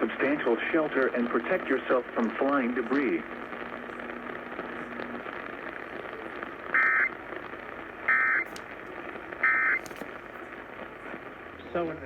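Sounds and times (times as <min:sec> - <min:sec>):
radio static hiss: 0:00.0 - 0:12.0.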